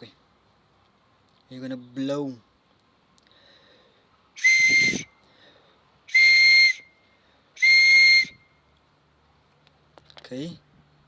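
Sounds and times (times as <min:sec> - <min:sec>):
breath hiss: 0:03.2 - 0:04.1
shrill pen cap whistle: 0:04.4 - 0:05.1, 0:06.1 - 0:06.8, 0:07.6 - 0:08.4.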